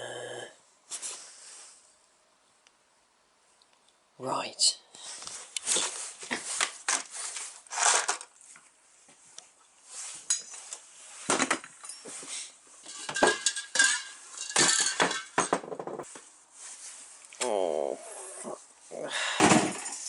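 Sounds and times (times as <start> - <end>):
hard objects clinking and clattering: 7.7 - 8.4, 12.8 - 16.1.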